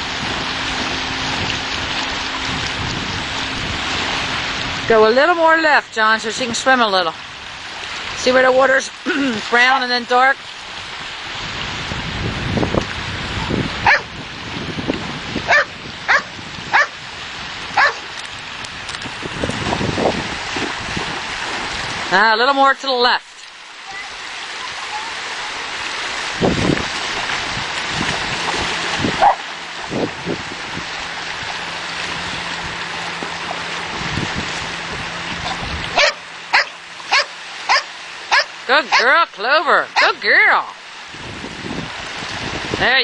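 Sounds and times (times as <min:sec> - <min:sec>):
surf: 0:00.0 - 0:43.0
wind: 0:00.0 - 0:43.0
dog yelping: 0:13.8 - 0:14.1, 0:15.5 - 0:17.0, 0:17.8 - 0:18.0, 0:29.2 - 0:29.4, 0:36.0 - 0:39.1.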